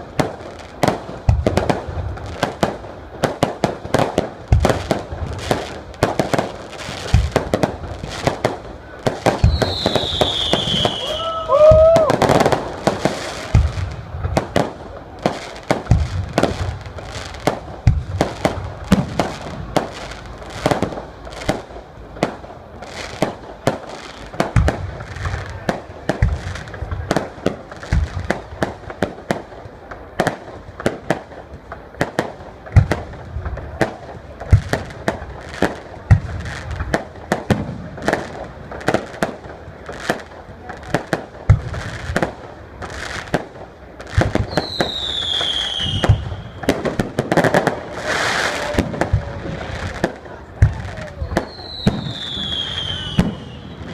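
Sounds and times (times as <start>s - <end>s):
fireworks shells bursting: 9.2s - 15.0s.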